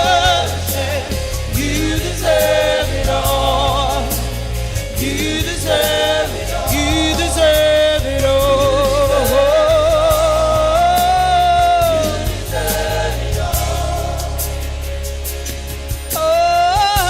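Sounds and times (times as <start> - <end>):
band with bass and beat: 0.0 - 17.0
choir singing: 0.0 - 17.0.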